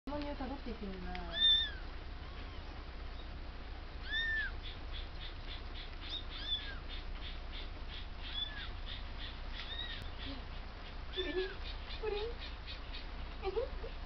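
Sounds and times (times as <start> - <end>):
kitten mewing: 1.3 - 2.8, 4.0 - 4.6, 6.1 - 6.8, 9.6 - 10.5
fast high chirping: 4.0 - 13.5.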